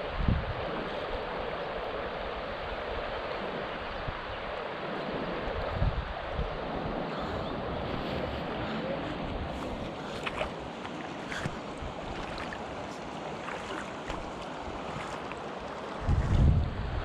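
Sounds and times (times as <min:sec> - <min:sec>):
mountain stream running: 0:00.0 - 0:17.0
light water splashes: 0:08.0 - 0:16.6
low rumble on microphone: 0:16.0 - 0:17.0.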